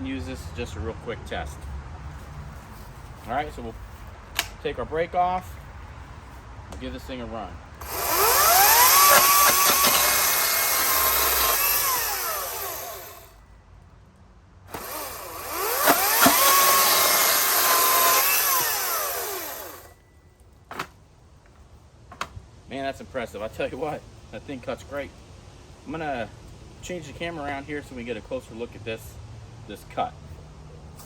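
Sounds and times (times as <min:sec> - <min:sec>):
battery chainsaw cutting wood: 0:07.8 - 0:13.3, 0:14.7 - 0:19.9.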